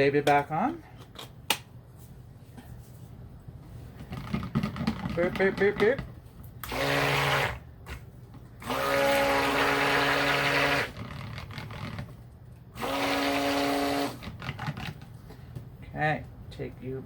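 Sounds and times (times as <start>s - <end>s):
stick blender motor whine: 6.6s - 8.0s, 8.6s - 12.1s, 12.8s - 14.7s.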